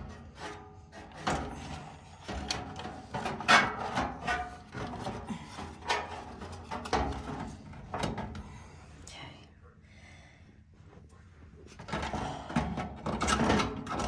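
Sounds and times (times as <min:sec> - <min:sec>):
heater parts knocking and scraping: 0:00.0 - 0:08.6, 0:11.7 - 0:14.0.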